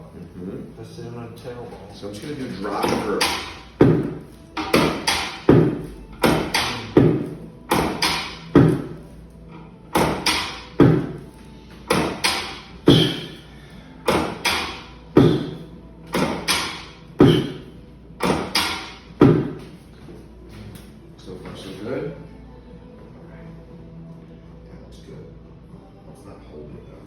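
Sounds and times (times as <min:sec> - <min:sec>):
sharp rhythmic thuds: 0:02.8 - 0:09.1, 0:09.9 - 0:13.4, 0:14.0 - 0:19.8.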